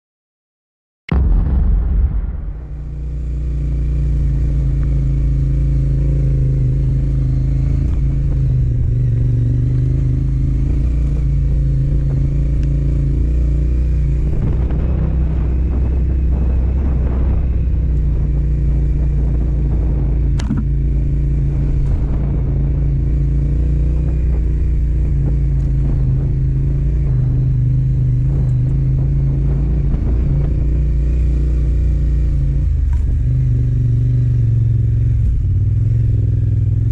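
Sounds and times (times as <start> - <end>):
motorcycle engine running: 2.5 - 36.9
sharp click: 20.4 - 20.7.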